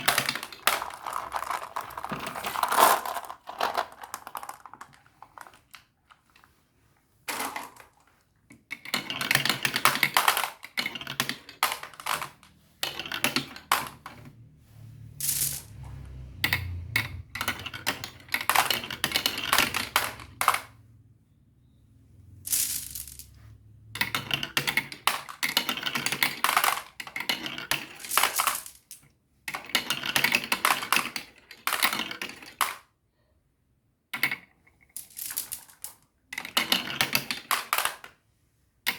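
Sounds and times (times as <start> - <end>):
marbles clicking and clattering: 0.0 - 5.9, 8.7 - 14.2, 15.2 - 20.7, 22.4 - 23.4, 24.0 - 32.9, 34.2 - 38.1.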